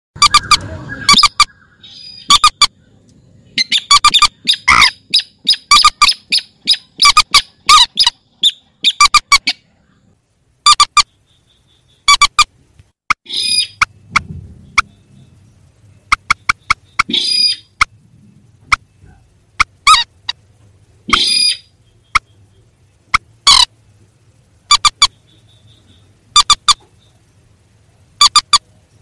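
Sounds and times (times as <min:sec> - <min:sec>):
harsh bird call: 0:00.2 - 0:02.9, 0:03.5 - 0:09.7, 0:13.2 - 0:15.4, 0:16.1 - 0:17.9, 0:21.1 - 0:22.5.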